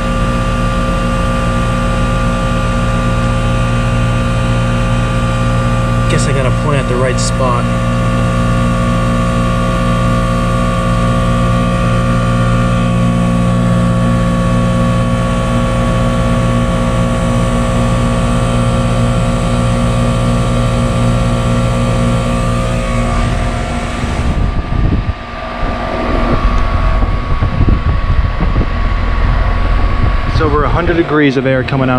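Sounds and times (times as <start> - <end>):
air conditioner unit humming: 0.0 - 31.9
air gusts on microphone: 22.2 - 31.9.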